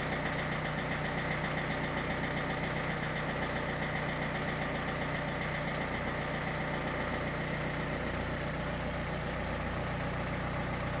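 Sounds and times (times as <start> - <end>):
diesel engine idling with knock: 0.0 - 11.0.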